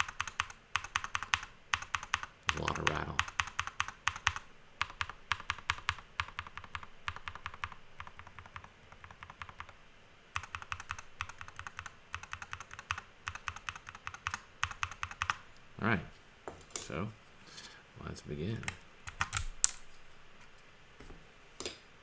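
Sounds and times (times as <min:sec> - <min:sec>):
keyboard keys clicking: 0:00.0 - 0:09.8, 0:10.4 - 0:15.4, 0:18.6 - 0:19.8.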